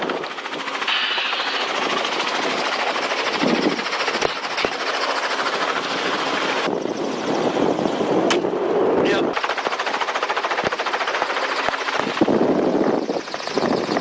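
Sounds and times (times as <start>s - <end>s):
helicopter rotor and engine: 0.0s - 14.0s.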